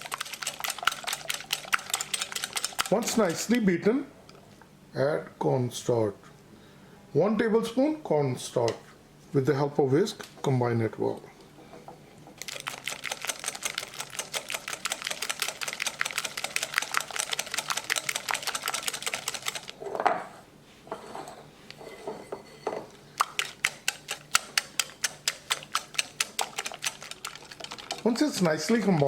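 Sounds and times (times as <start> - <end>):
whisk clicking against bowl: 0.0 - 3.6, 12.4 - 19.7, 23.2 - 29.0.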